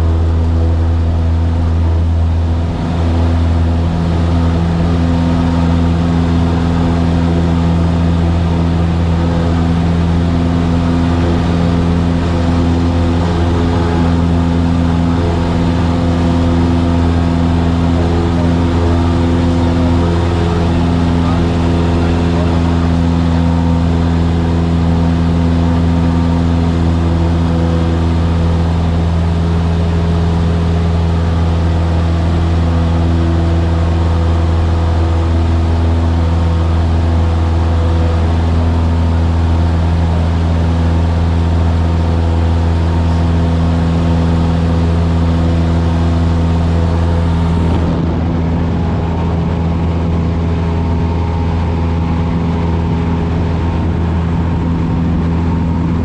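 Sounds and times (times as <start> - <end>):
light aircraft engine droning: 0.0 - 56.0.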